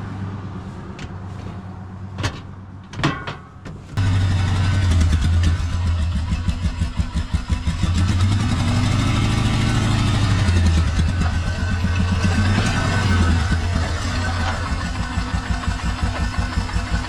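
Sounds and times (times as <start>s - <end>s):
quad engine revving: 4.0s - 17.0s.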